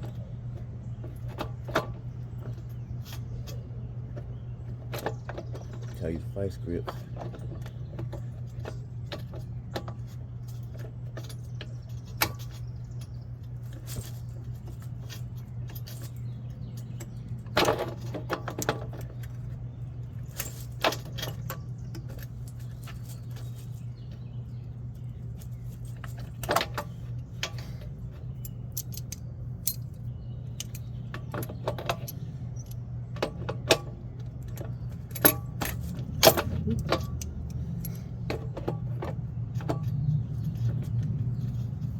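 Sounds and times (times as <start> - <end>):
steady low hum: 0.0 - 41.9
hand tools clinking on metal: 25.4 - 41.0.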